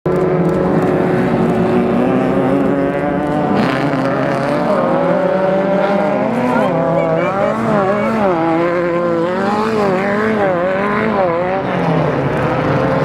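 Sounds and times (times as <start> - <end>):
race car engine revving: 0.1 - 13.0.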